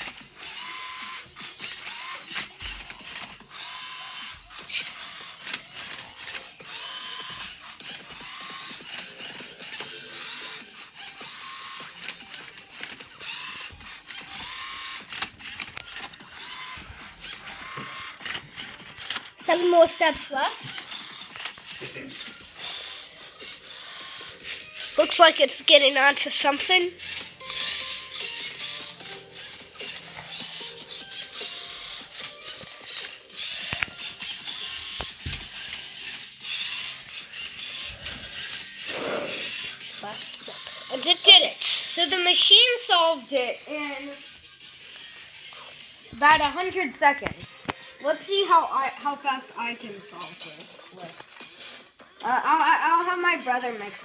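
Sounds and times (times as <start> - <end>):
cube layers clicking and rattling: 0.0 - 21.8, 29.1 - 41.4
electric motors whirring: 0.0 - 54.0.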